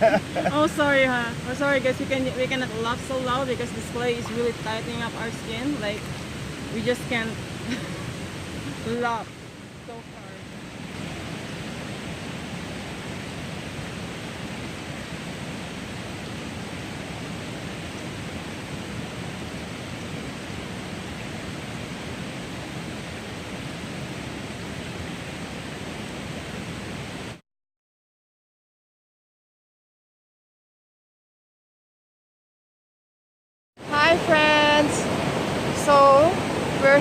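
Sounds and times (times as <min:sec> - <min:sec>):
river rushing: 0:00.0 - 0:27.4, 0:33.8 - 0:37.0.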